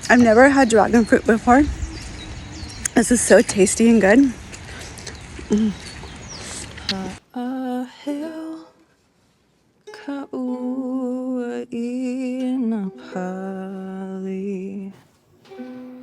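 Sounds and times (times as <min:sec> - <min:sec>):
person singing long held notes: 0:06.9 - 0:08.9, 0:09.9 - 0:16.0.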